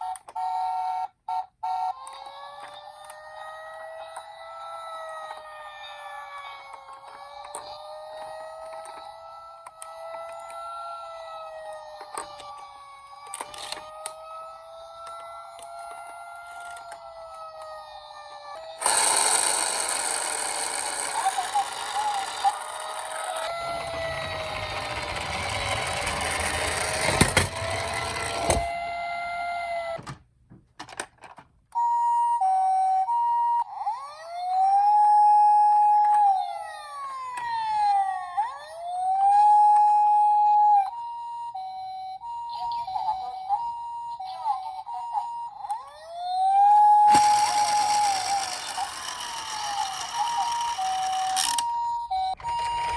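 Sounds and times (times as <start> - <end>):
toy electronic siren: 0.0 - 30.1, 31.7 - 52.9
hi-lo siren tone: 21.0 - 29.7.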